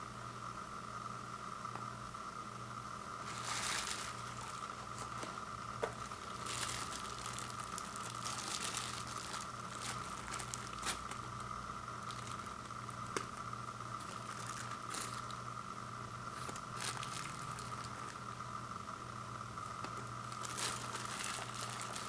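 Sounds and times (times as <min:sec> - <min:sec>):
steady high-pitched hum: 0:00.0 - 0:22.0
crinkling plastic wrap: 0:03.2 - 0:15.5, 0:16.3 - 0:18.3, 0:19.8 - 0:22.0.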